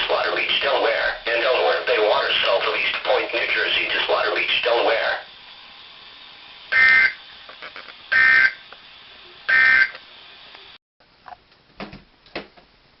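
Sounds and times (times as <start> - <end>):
faint broadcast hiss: 0.0 - 13.0.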